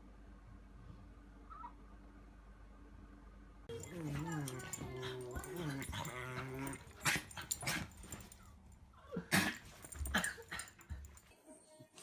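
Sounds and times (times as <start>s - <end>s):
dog sneezing: 9.3s - 10.4s.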